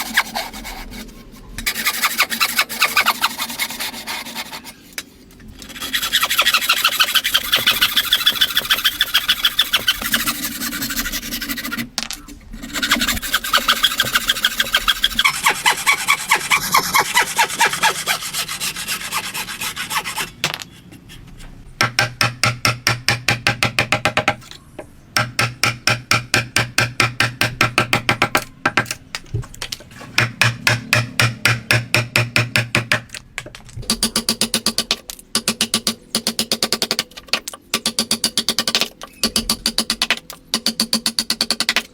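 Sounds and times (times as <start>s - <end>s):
hand tool rasping on wood: 1.6s - 4.7s, 5.7s - 11.8s, 12.6s - 20.3s.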